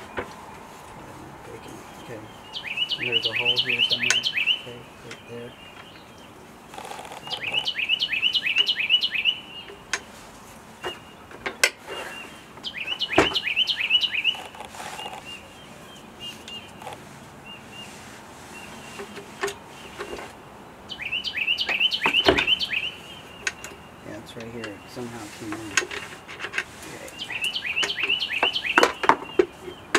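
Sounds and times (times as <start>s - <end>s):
songbird singing: 0.0s - 29.9s
sharp knocks and clicks: 27.8s - 29.9s.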